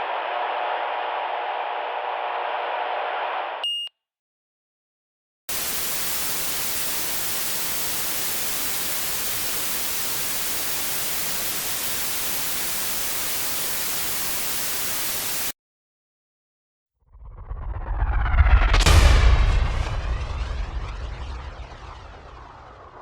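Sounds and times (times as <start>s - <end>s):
white noise hiss: 5.5s - 15.5s.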